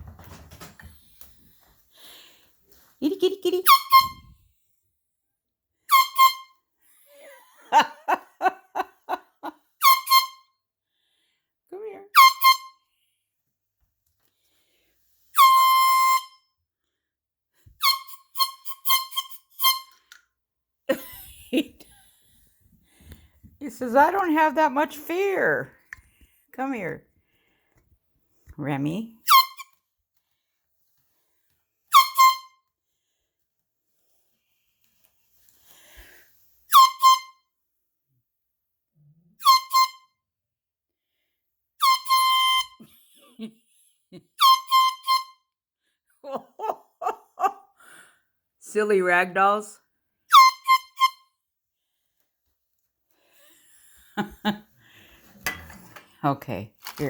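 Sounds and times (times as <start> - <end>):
handheld horn honking: 15.4 - 16.4, 17.8 - 20.1, 44.4 - 45.4.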